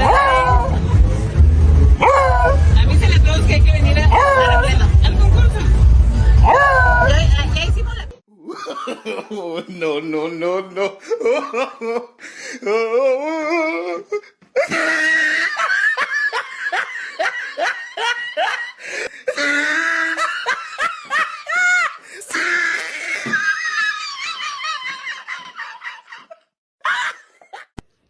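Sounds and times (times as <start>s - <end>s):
people laughing hard: 0.0s - 1.2s, 8.4s - 9.9s, 10.9s - 12.2s, 14.6s - 27.7s.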